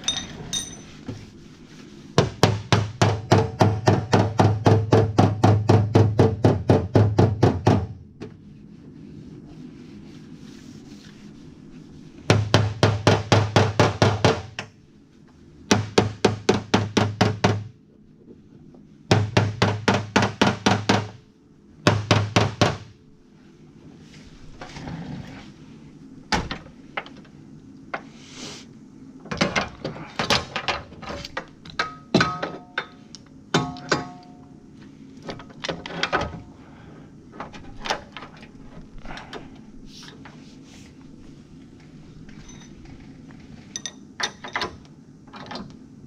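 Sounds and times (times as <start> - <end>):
light knocks and metallic ringing: 0.0 - 1.0, 31.8 - 34.5
hammer on sheet metal: 2.2 - 8.0, 12.3 - 14.6, 21.8 - 22.9.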